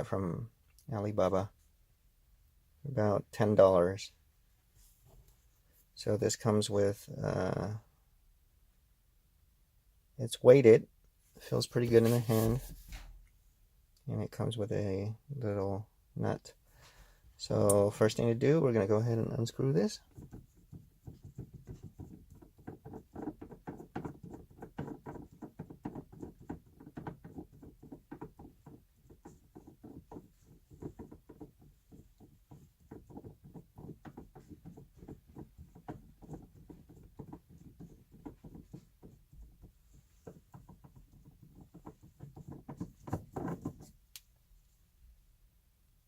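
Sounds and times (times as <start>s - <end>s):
shift knob rubbing and clicking: 11.6s - 13.1s, 20.0s - 44.1s.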